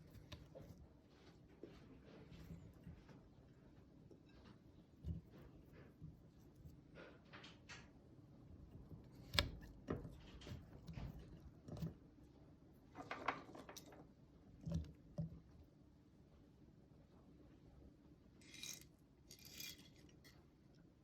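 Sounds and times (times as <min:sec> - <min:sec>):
kitchen knocks and clatters: 0:13.0 - 0:14.1.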